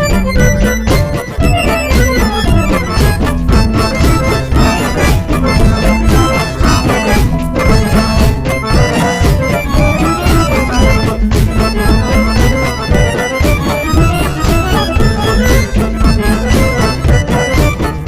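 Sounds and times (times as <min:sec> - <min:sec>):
folk music with steady beat: 0:00.0 - 0:18.0.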